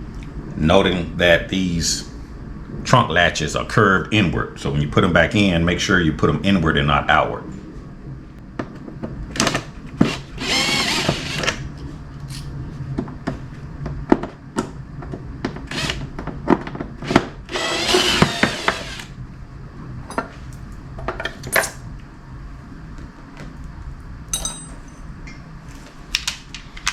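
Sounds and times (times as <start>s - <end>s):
cordless drill running: 9.4s - 11.6s, 15.7s - 16.0s, 17.5s - 19.1s.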